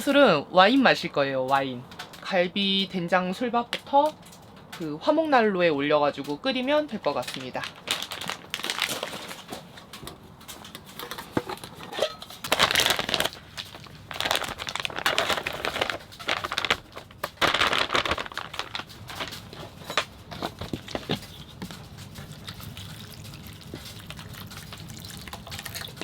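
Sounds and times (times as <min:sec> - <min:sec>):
plastic packaging crinkling: 0:06.2 - 0:26.0.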